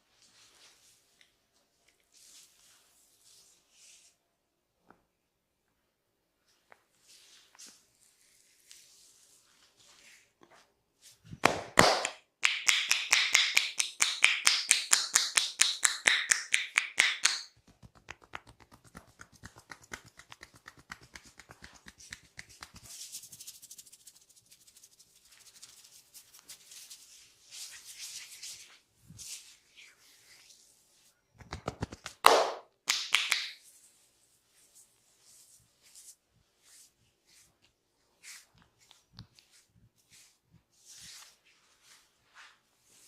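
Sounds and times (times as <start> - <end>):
hand slap: 11.3 - 22.9, 31.4 - 33.6
rapid tapping on head: 11.4 - 25.8, 31.4 - 33.6
rubbing and scratching: 12.7 - 43.0.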